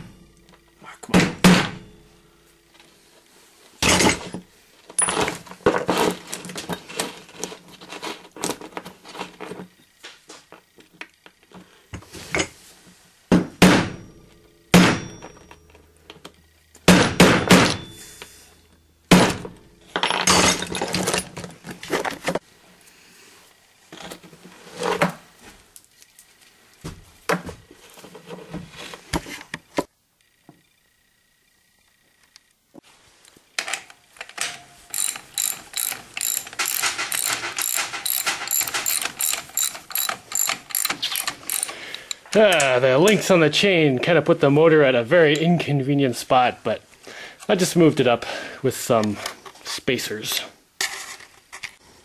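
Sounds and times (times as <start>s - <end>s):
tools and hard parts clattering: 3.8s - 9.7s, 15.0s - 16.3s, 19.5s - 22.4s, 33.6s - 43.3s, 50.8s - 51.8s.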